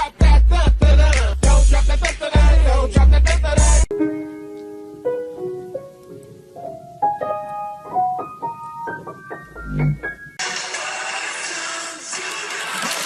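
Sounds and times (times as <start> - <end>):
piano notes: 3.9 - 10.4.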